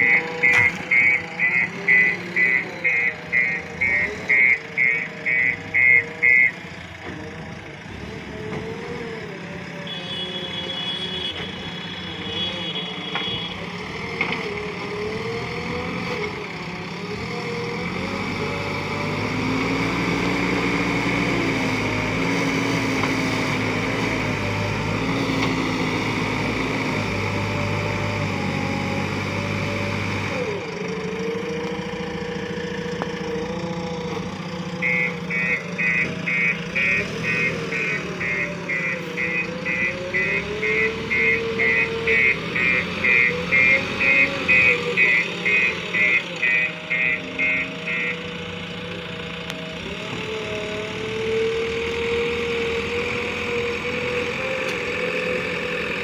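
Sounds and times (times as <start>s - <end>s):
reversing alarm beeps: 0.0s - 6.6s, 34.8s - 48.3s
diesel engine working: 0.0s - 56.0s.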